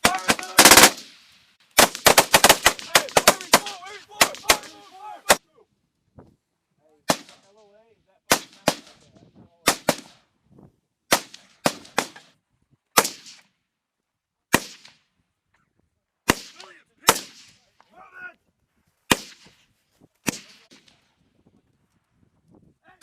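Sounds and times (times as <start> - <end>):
rifle shots echoing: 0.0 - 5.4, 8.3 - 9.0, 9.6 - 10.2, 13.0 - 13.4, 14.5 - 15.0, 16.3 - 17.7, 19.1 - 19.6.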